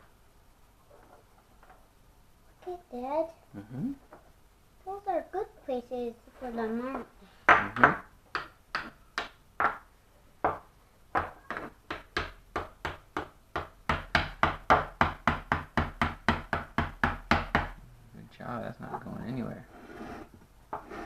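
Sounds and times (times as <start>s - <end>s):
wooden toy hammer knocking: 7.5s - 9.8s.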